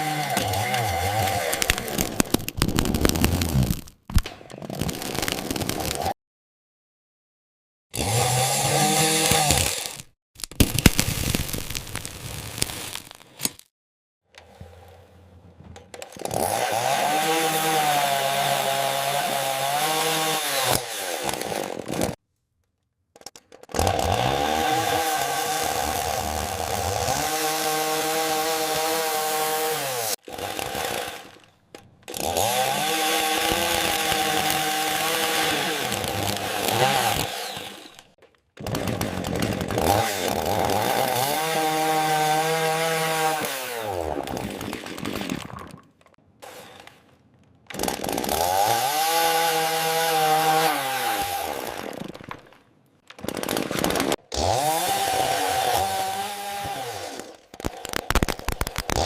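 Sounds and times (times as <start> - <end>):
chainsaw cutting: 0.0 - 3.9, 7.9 - 10.2, 16.0 - 22.2, 23.7 - 45.3, 46.4 - 47.1, 47.7 - 52.3, 53.2 - 59.0.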